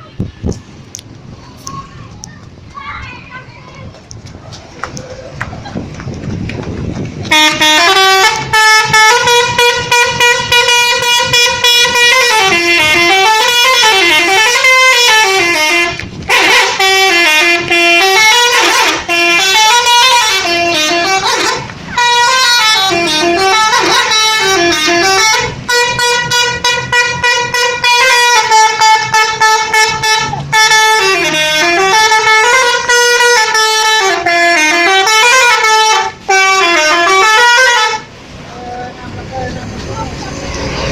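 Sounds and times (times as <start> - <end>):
multi-tone musical bus horn: 7.3 - 38.7.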